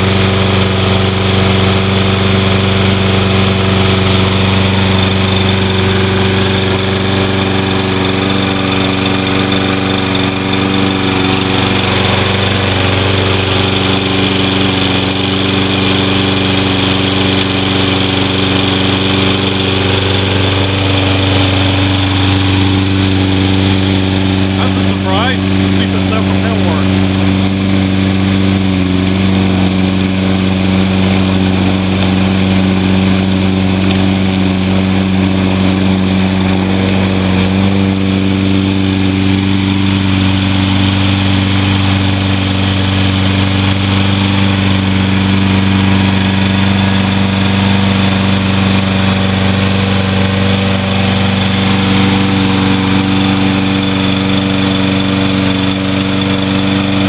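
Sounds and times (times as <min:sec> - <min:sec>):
lawn mower engine running: 0:00.0 - 0:57.0.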